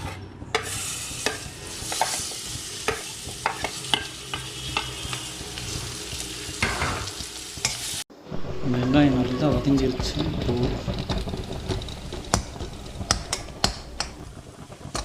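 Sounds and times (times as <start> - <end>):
onions sizzling in a pan: 0.5 - 8.1, 9.6 - 15.0
spatula clicking and scraping pan: 0.6 - 5.3, 10.3 - 14.3.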